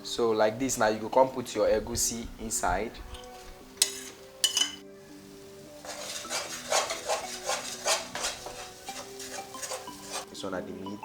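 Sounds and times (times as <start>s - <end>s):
oil sizzling: 2.5s - 10.4s
metal spoon clinking on pot: 3.1s - 4.8s, 5.8s - 10.3s
spoon scraping while stirring: 3.2s - 4.8s, 5.8s - 10.4s.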